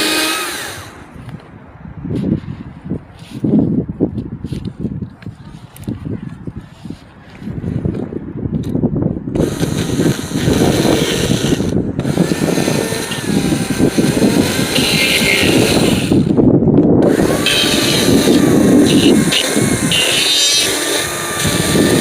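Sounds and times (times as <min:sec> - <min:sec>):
chainsaw cutting wood: 0:00.0 - 0:01.0, 0:09.4 - 0:16.4, 0:17.0 - 0:22.0.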